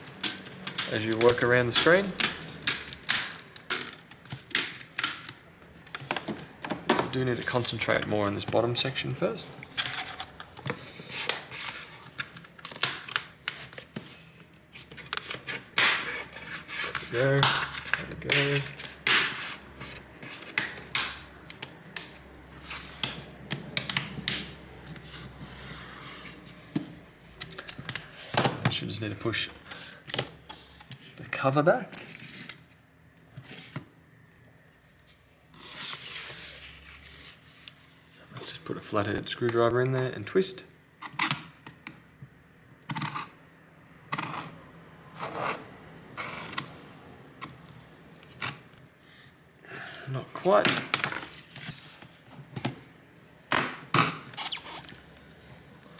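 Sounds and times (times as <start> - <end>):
plastic handling: 0.0 - 34.0.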